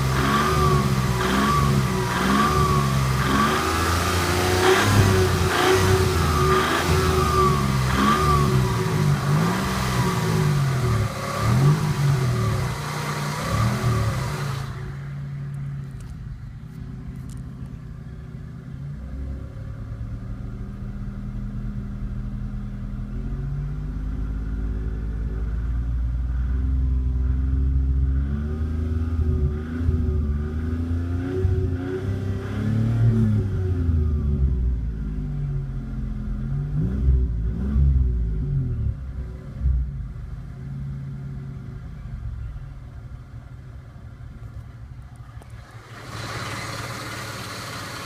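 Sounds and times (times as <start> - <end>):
car engine revving: 0.0 - 41.8, 44.3 - 48.0
engine knocking: 45.1 - 48.0.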